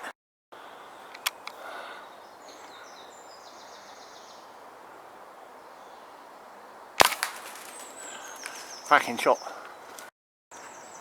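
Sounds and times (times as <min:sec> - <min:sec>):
small birds chirping: 0:00.0 - 0:11.0
air rifle shot: 0:07.0 - 0:08.0.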